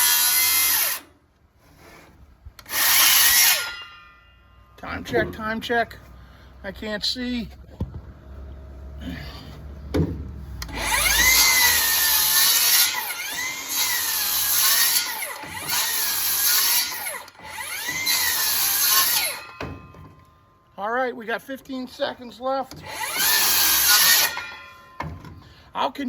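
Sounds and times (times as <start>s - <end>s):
circular saw cutting wood: 0.0s - 5.2s, 10.6s - 20.1s, 21.8s - 25.2s.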